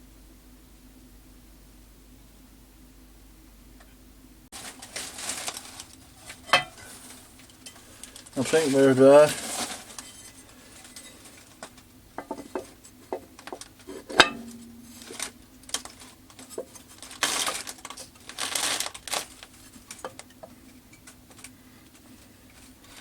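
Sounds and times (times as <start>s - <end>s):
sharp ringing metallic knock: 14.2s - 15.2s.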